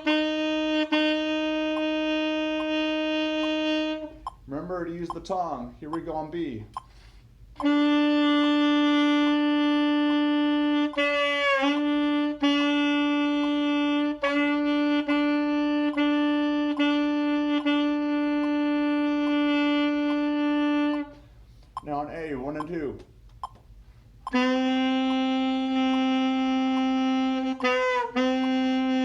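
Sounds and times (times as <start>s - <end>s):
saxophone long tone: 0.0s - 4.2s, 7.6s - 21.4s, 24.3s - 29.0s.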